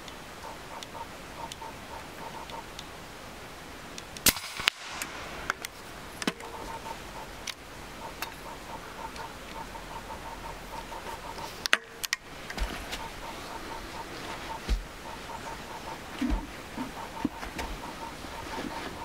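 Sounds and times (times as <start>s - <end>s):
air rifle shots: 4.2s - 5.6s.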